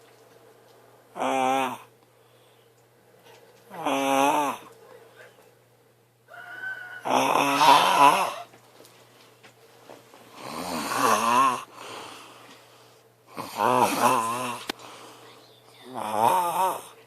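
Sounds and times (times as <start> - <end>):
man snoring: 1.2 - 1.9, 3.7 - 4.7, 7.0 - 8.5, 10.3 - 12.2, 13.3 - 14.7, 15.9 - 17.0.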